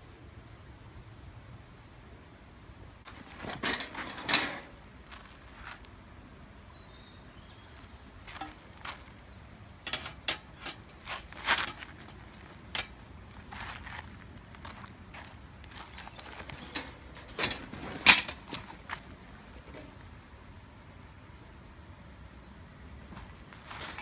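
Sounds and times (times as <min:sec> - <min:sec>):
objects knocking and clattering: 0:03.1 - 0:04.8, 0:08.3 - 0:09.0, 0:09.8 - 0:13.7, 0:16.2 - 0:20.0
rustling: 0:03.1 - 0:05.9, 0:07.7 - 0:20.1, 0:23.1 - 0:24.0.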